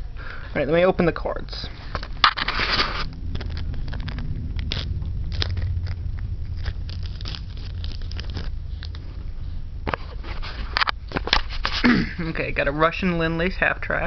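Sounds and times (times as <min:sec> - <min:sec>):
steady low hum: 0:00.0 - 0:14.0
card packaging crackling: 0:01.8 - 0:11.9.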